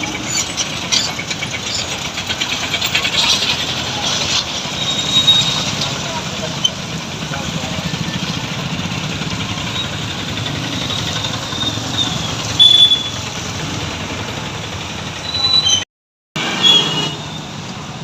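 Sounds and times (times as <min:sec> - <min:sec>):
vehicle engine rumbling: 0:00.0 - 0:18.0
short high-pitched horn toots: 0:16.4 - 0:17.4.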